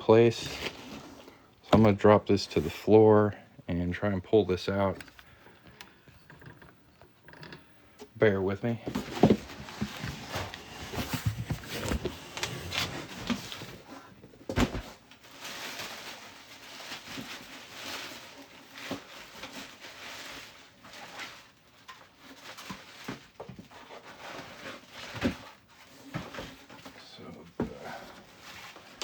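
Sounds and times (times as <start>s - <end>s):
foam and cardboard scraping: 0.2s - 1.9s, 8.8s - 14.9s.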